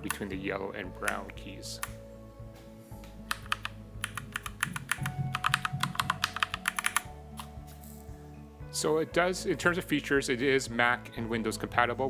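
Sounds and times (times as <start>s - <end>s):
mechanical keyboard keys clacking: 3.3s - 7.1s.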